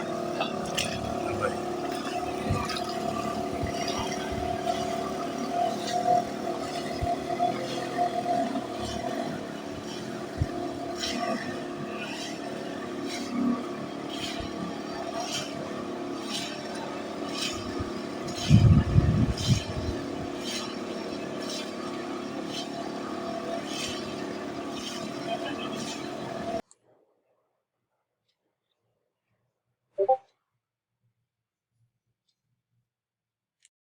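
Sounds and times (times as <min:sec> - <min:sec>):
vehicle engine humming: 0:00.0 - 0:26.6.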